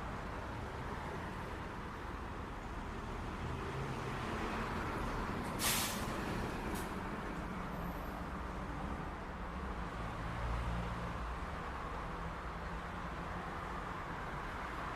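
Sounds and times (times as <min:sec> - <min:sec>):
rumble of passing vehicles: 0:00.0 - 0:14.9
short sharp hiss: 0:05.6 - 0:06.2.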